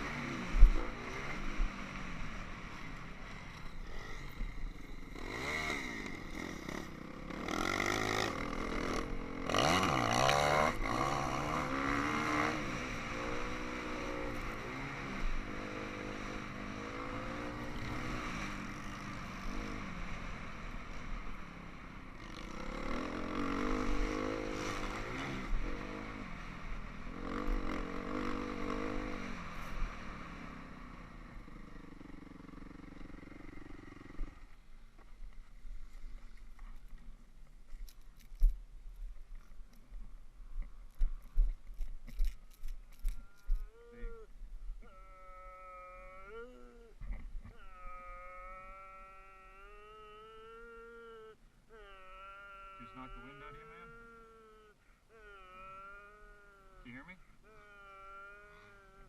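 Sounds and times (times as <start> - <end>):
dirt bike engine: 0.0 - 59.0
person groaning and moaning: 43.6 - 59.0.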